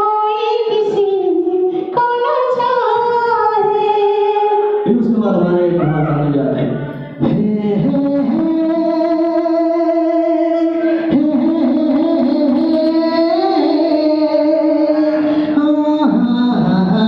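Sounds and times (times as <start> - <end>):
man singing unaccompanied: 4.8 - 17.0.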